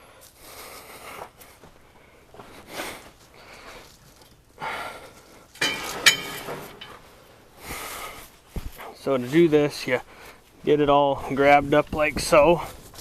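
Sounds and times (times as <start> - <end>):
sharp metal clink: 5.6 - 7.1.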